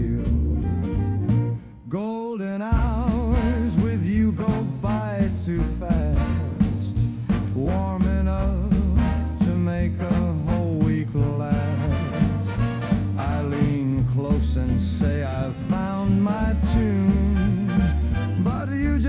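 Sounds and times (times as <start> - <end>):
swing dance song with singer: 0.0 - 19.0.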